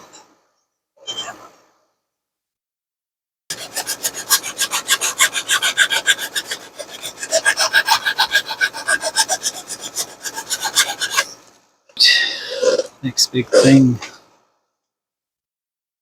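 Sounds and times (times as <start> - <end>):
file rasping on plastic: 3.5 - 11.5.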